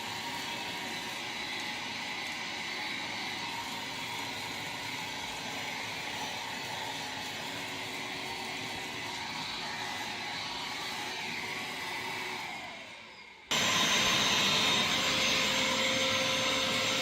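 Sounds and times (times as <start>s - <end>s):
stick vacuum cleaner running: 0.0s - 17.0s.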